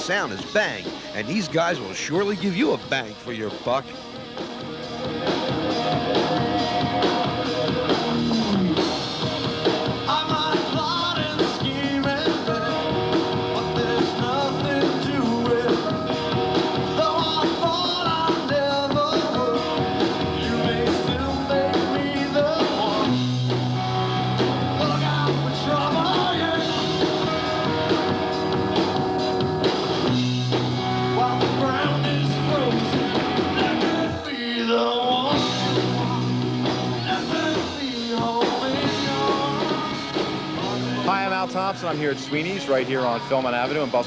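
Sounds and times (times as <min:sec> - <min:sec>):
rock band music: 0:00.0 - 0:44.0
electric guitar: 0:03.2 - 0:44.0
heavy bass line: 0:05.0 - 0:10.1
person singing: 0:10.0 - 0:16.1, 0:31.2 - 0:41.1.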